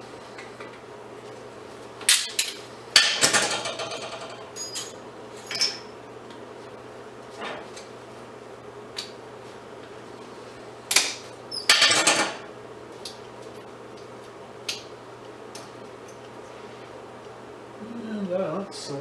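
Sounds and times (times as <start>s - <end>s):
scrap metal clanking: 2.1s - 2.6s.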